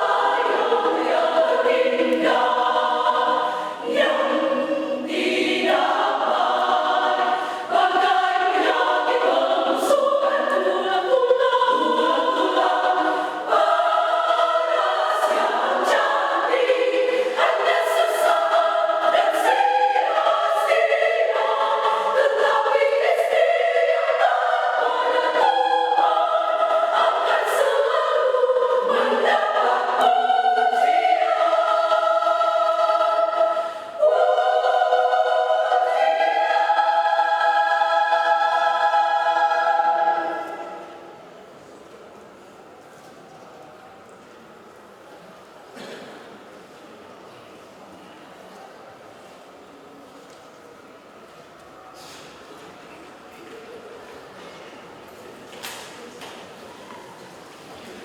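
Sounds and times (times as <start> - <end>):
women's choir singing: 0.0 - 41.9.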